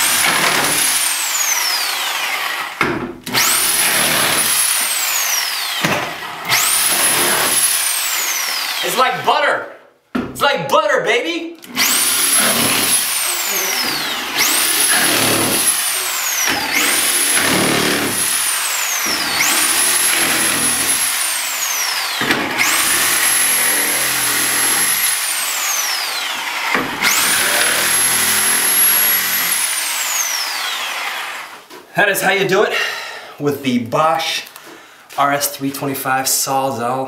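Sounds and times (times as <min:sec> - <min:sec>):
reciprocating saw cutting wood: 0:00.0 - 0:09.1, 0:11.6 - 0:31.6.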